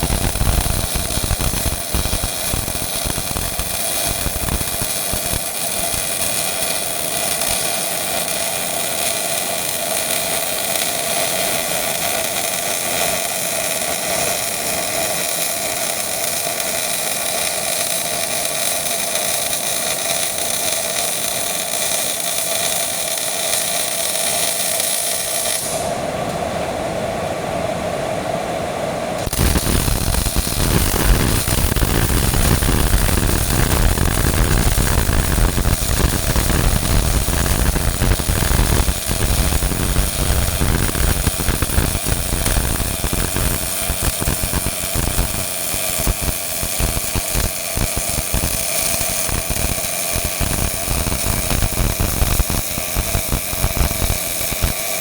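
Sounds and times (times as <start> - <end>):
steady hum: 0.0 - 10.4, 25.2 - 55.0
welding arc crackling: 0.0 - 25.9, 29.2 - 55.0.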